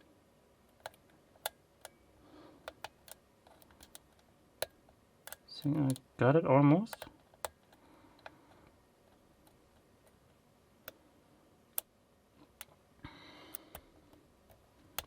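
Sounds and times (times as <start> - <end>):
lock pick clicking: 2.6 - 6.0.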